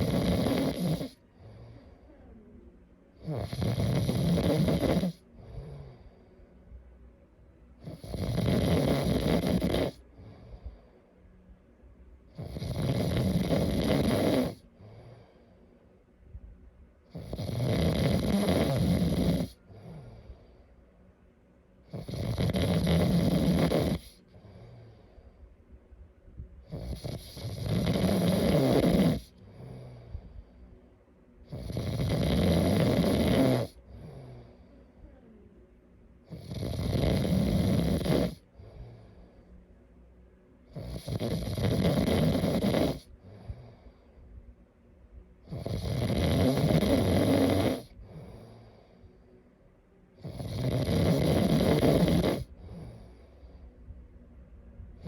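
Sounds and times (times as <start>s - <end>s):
person snoring: 0.0s - 2.2s, 3.2s - 6.2s, 7.8s - 10.8s, 12.4s - 15.4s, 17.1s - 20.5s, 21.9s - 25.2s, 26.7s - 30.4s, 31.5s - 35.2s, 36.3s - 39.4s, 40.7s - 44.0s, 45.4s - 49.0s, 50.2s - 53.6s
quiet breathing: 0.0s - 8.4s, 9.0s - 32.7s, 33.6s - 36.7s, 37.6s - 41.6s, 42.2s - 50.5s, 51.8s - 55.0s.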